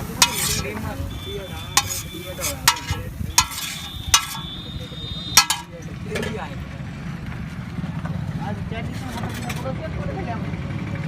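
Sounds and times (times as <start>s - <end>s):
metal spatula clanking against pan: 0.0s - 0.8s, 1.7s - 4.6s, 5.4s - 6.4s
frying hiss: 0.0s - 6.3s.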